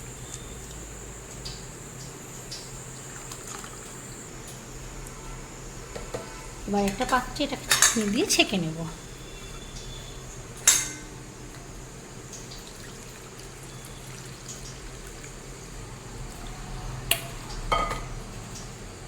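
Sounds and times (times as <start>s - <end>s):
liquid dripping into a bowl: 8.9s - 18.8s.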